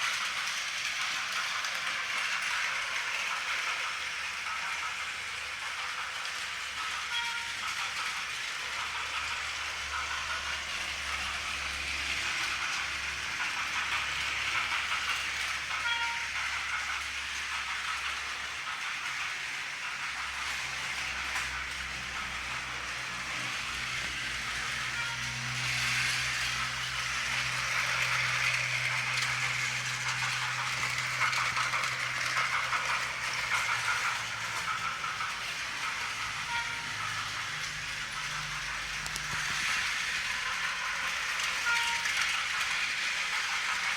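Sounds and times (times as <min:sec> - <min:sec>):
toy trains whirring on track: 0:00.0 - 0:43.9
electronic toy horn: 0:15.8 - 0:16.3.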